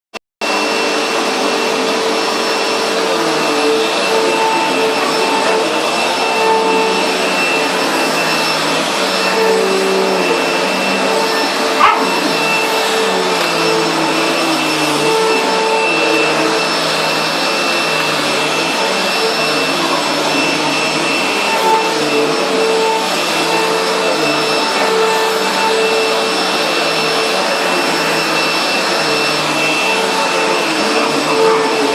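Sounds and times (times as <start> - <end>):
vacuum cleaner running: 0.4 - 31.9.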